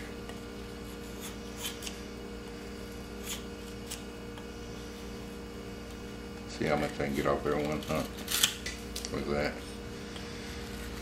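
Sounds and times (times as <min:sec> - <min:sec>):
steady hum: 0:00.0 - 0:11.0
knife scraping wood: 0:00.6 - 0:02.0, 0:03.1 - 0:04.1, 0:10.1 - 0:11.0.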